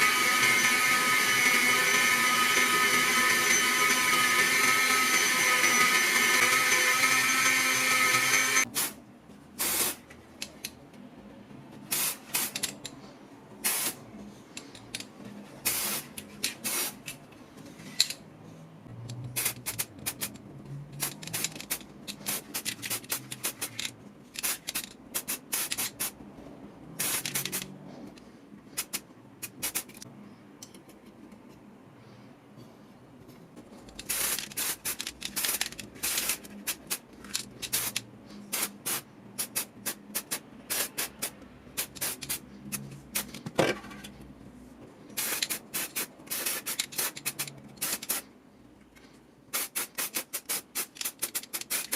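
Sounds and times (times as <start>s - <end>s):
power tool running: 0.0s - 8.6s
spray hissing bursts: 9.6s - 10.0s, 13.6s - 14.0s, 45.2s - 48.2s, 49.5s - 51.9s.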